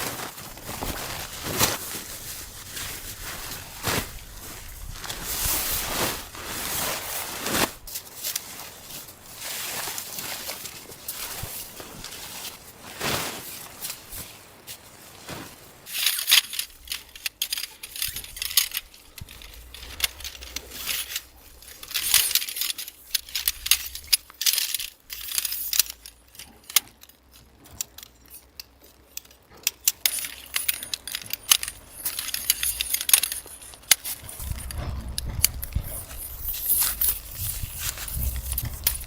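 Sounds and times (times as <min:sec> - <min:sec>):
rustling: 0:00.0 - 0:39.0
light clicks and clinks: 0:15.9 - 0:39.0
low rumble: 0:34.3 - 0:39.0.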